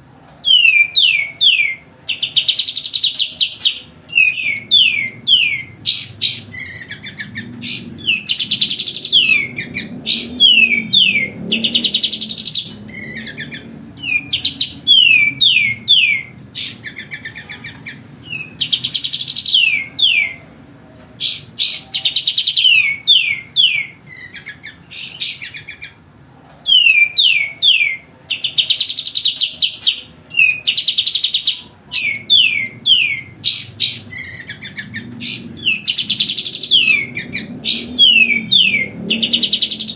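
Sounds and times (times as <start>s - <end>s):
bulbul singing: 0.0s - 39.9s.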